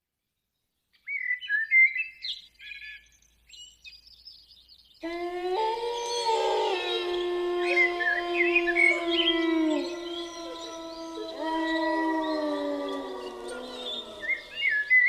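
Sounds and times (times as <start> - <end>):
small birds chirping: 0.9 - 15.0
wolves howling: 5.0 - 15.0.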